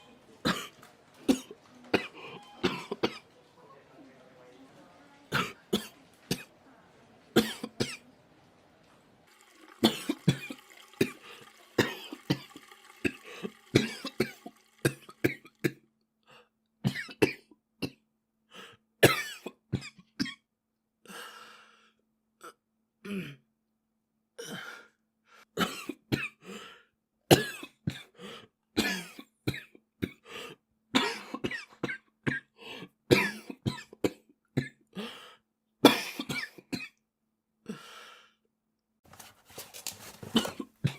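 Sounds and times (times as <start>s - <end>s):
boy coughing: 0.4s - 3.2s.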